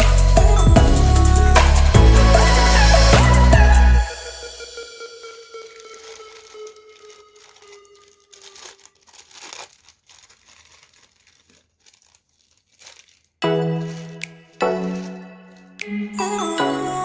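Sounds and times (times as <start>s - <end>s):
packaging crinkling and tearing: 5.1s - 15.7s.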